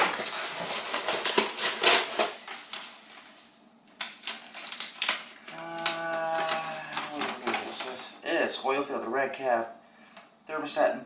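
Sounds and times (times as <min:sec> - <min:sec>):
package rustling: 0:00.0 - 0:08.2.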